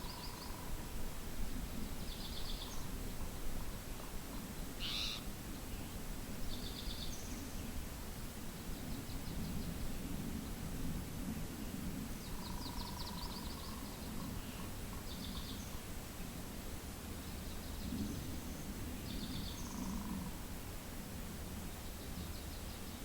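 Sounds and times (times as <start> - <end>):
wind rumbling on microphone: 0.0 - 23.0
small bird trilling: 4.8 - 5.2.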